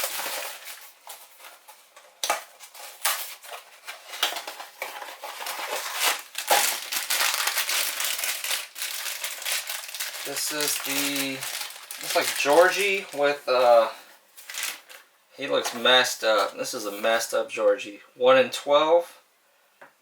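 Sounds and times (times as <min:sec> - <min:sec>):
cardboard and plastic crinkling: 0:00.0 - 0:15.0.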